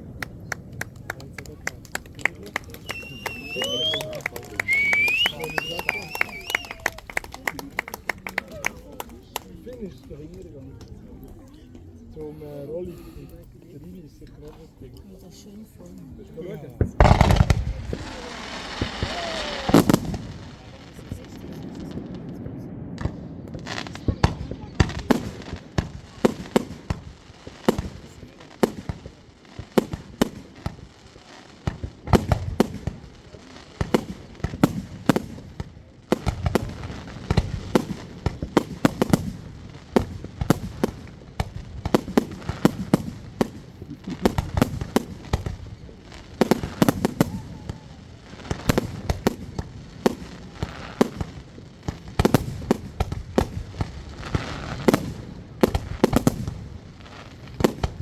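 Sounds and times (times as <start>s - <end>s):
deep fireworks booms: 0.0s - 9.5s, 16.8s - 58.0s
fireworks bangs and crackling: 0.0s - 58.0s.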